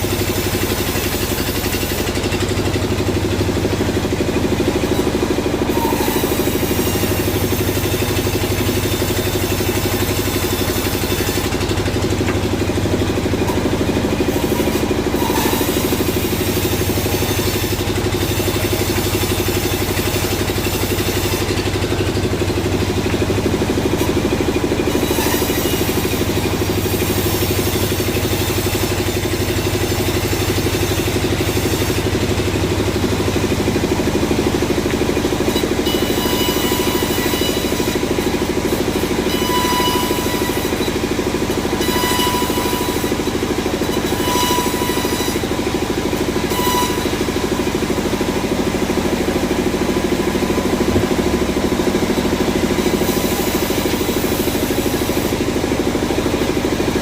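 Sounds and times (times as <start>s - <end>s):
sawmill machinery droning: 0.0s - 57.0s.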